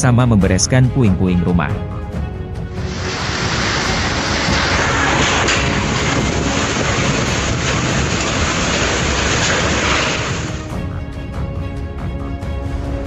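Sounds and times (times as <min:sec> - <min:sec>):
heavy rain rushing: 0:02.7 - 0:10.8
wind buffeting microphone: 0:02.8 - 0:10.8.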